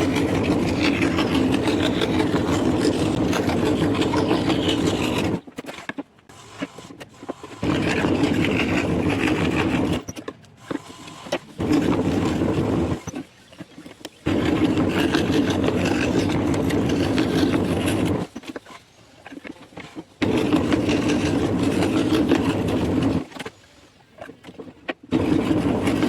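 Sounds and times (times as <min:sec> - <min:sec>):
scroll saw cutting wood: 0:00.0 - 0:26.0.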